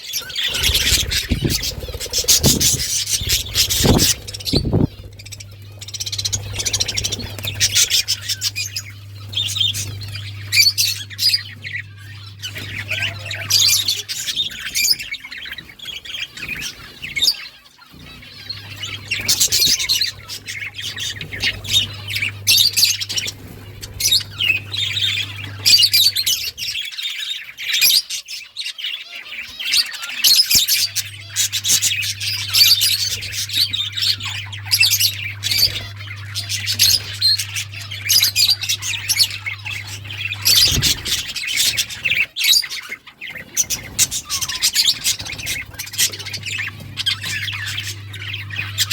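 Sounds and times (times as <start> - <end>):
budgerigars chirping: 0.0 - 48.9
low hum: 0.2 - 13.7.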